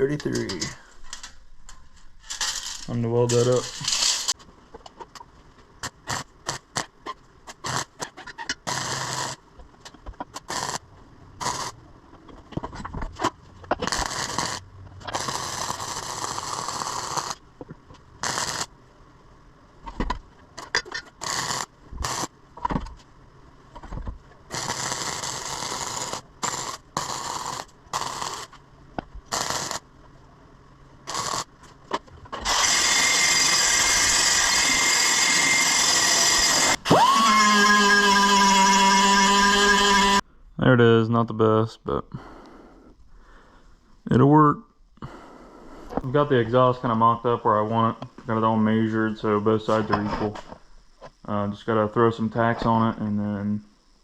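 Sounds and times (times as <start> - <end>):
welding arc crackling: 2.2 - 4.4, 5.8 - 11.8, 13.6 - 18.8, 20.6 - 22.8, 24.5 - 28.6, 29.2 - 29.9, 31.0 - 40.2
loud power tool running: 32.4 - 40.2.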